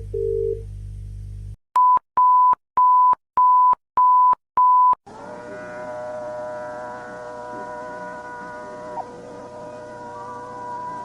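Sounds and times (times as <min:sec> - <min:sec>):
low electronic hum with tones: 0:00.0 - 0:01.6, 0:05.1 - 0:11.0
droning musical chord: 0:05.1 - 0:11.0.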